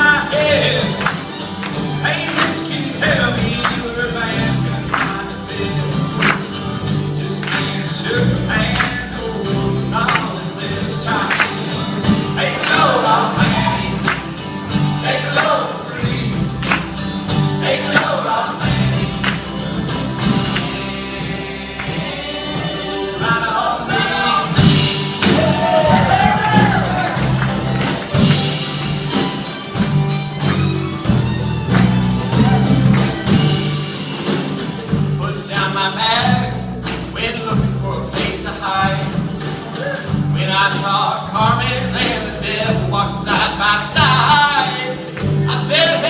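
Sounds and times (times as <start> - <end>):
voices singing together: 0.0 - 28.5
bass line: 0.0 - 46.0
live band playing: 0.0 - 46.0
steady drum beat: 0.0 - 46.0
person singing: 2.0 - 6.3, 20.3 - 27.3
sharp percussive hits: 24.0 - 37.3.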